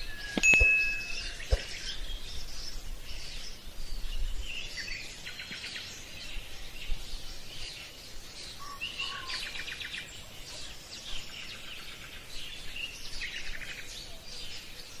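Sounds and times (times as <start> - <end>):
birds chirping and trilling: 0.0 - 15.0.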